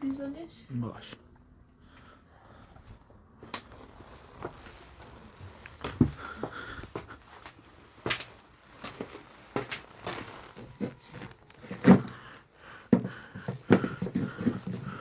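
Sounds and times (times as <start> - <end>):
objects knocking and clicking: 12.9 - 15.0.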